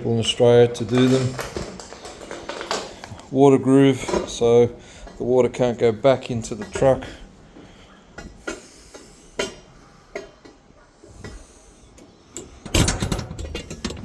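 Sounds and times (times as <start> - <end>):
clattering and knocking: 0.0 - 3.3, 12.4 - 14.0
knocks and clicks: 12.6 - 14.0.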